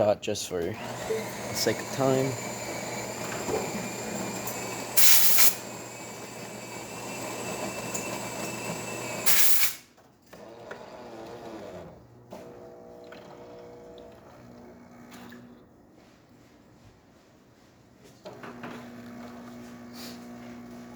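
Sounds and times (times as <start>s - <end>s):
espresso machine pump buzzing: 0.7s - 9.8s
short loud hisses: 5.0s - 5.6s, 9.3s - 9.8s.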